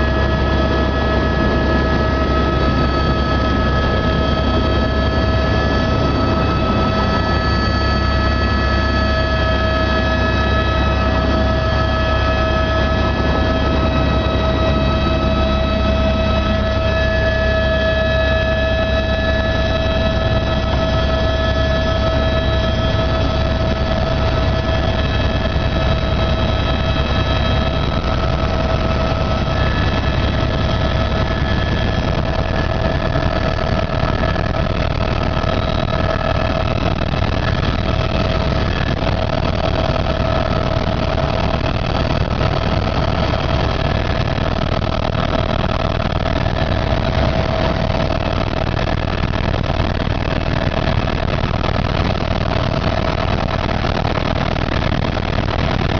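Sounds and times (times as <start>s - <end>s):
helicopter drone: 0.0s - 55.9s
high whine: 0.0s - 55.9s.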